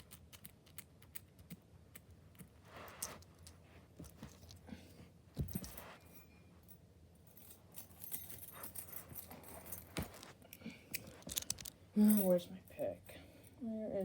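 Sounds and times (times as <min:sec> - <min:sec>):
metal clicks and rattles: 0:10.9 - 0:12.4.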